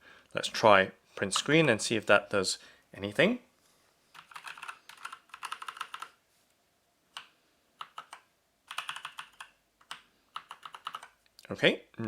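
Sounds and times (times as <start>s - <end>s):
mechanical keyboard keys clacking: 4.2s - 6.1s, 7.8s - 11.1s.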